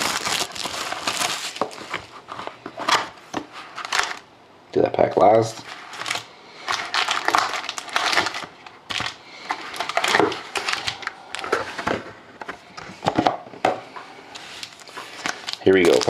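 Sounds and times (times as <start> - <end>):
foil wrappers crinkling: 0.0 - 4.2, 5.6 - 11.9, 14.3 - 16.0.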